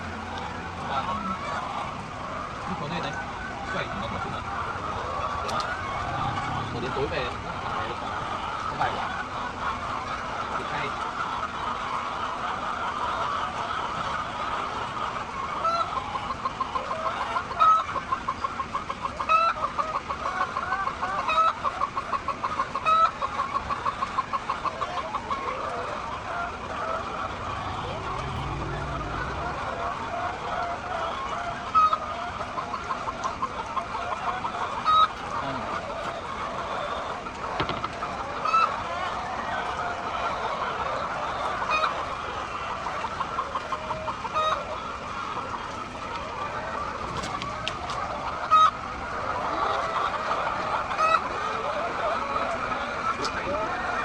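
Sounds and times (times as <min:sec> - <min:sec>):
hens clucking: 0:00.0 - 0:54.0.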